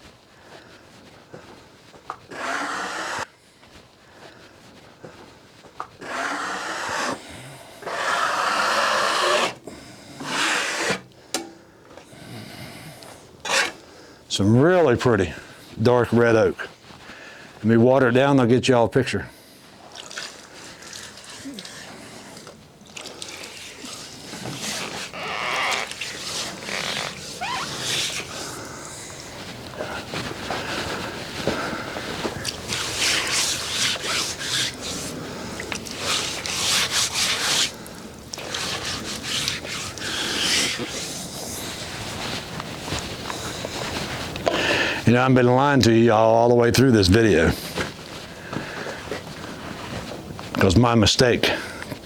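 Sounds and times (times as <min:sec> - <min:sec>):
hand scraper scraping wood: 0:02.2 - 0:03.3, 0:06.0 - 0:07.2, 0:07.8 - 0:09.6, 0:10.2 - 0:11.1, 0:13.4 - 0:13.8, 0:23.2 - 0:44.5
water pouring and splashing: 0:19.8 - 0:28.6, 0:32.4 - 0:42.6.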